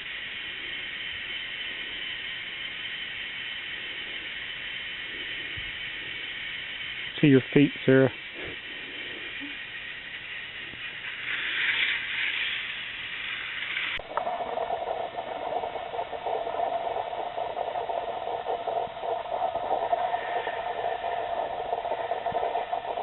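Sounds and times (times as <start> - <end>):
toy roller coaster rattling: 7.0 - 23.0.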